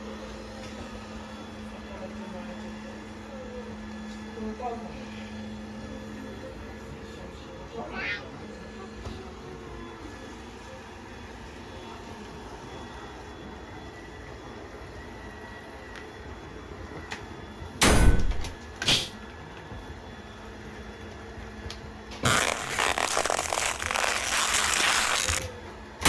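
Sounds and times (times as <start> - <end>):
loud knocks: 17.8 - 18.6.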